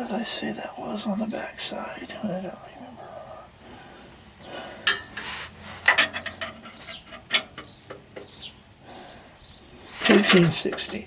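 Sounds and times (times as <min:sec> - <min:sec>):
metal hand tools clinking: 0:04.8 - 0:07.8, 0:10.0 - 0:11.0.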